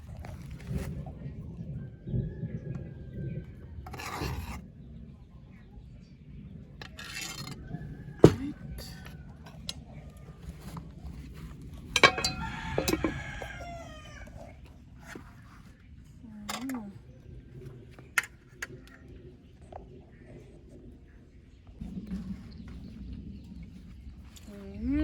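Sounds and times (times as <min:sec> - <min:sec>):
rooster crowing: 0:12.0 - 0:14.5.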